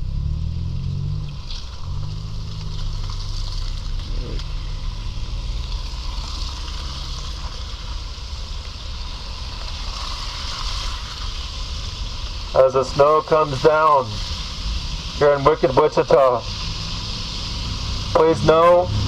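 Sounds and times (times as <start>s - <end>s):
tyres hissing on road: 0.0s - 19.0s
vehicle engine hum: 0.0s - 19.0s.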